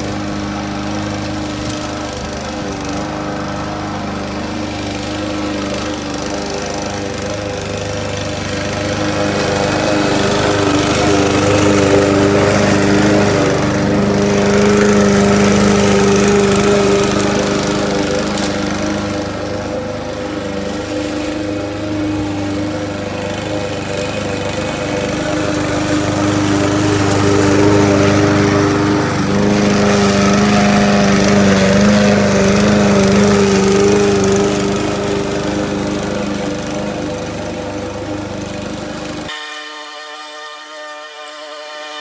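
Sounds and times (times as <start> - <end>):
lawn mower engine running: 0.0 - 39.4
music: 39.3 - 42.0.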